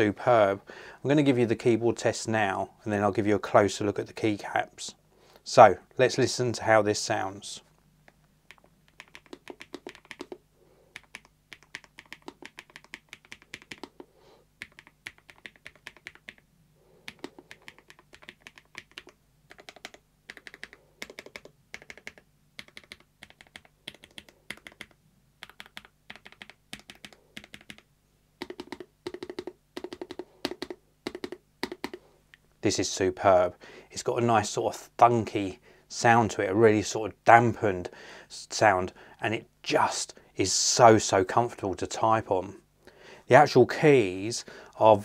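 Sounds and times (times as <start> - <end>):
typing on mechanical keyboard: 8.5 - 16.4, 17.1 - 27.8, 28.4 - 32.0.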